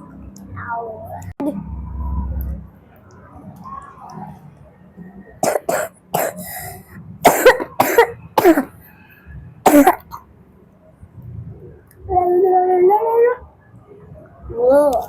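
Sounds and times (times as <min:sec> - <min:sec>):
person coughing: 0:05.4 - 0:06.6, 0:07.3 - 0:08.7, 0:09.7 - 0:10.2.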